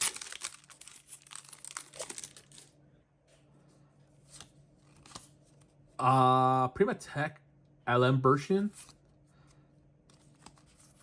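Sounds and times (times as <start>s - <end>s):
trading cards rustling: 0.0s - 2.8s.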